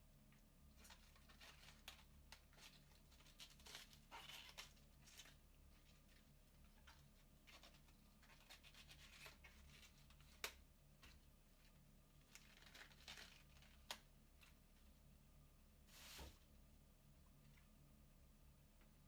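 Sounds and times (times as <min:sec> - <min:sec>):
knife slicing cabbage: 0:07.6 - 0:10.5.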